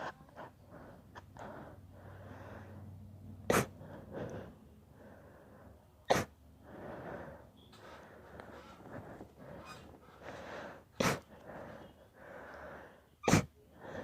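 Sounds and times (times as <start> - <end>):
breathy inhales: 6.6 - 13.1.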